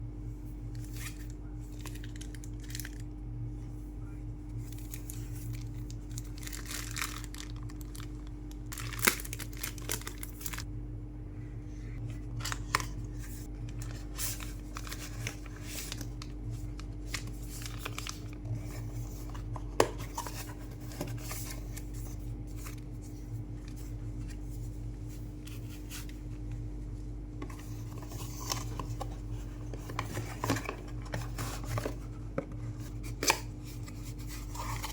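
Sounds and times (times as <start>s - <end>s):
steady low hum: 0.0s - 34.9s
plastic and cardboard rustling: 4.6s - 10.7s, 12.2s - 26.4s, 27.4s - 34.9s.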